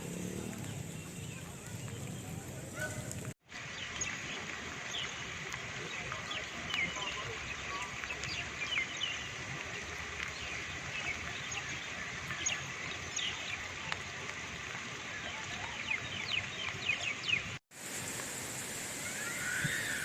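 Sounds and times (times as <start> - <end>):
birds chirping: 0.0 - 17.6
steady hiss: 16.6 - 20.0.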